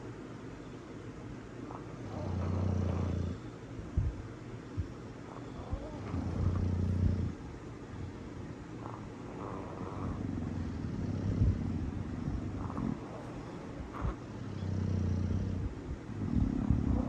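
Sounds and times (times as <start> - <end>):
dog snoring: 1.6 - 3.5, 5.2 - 8.1, 8.7 - 17.0.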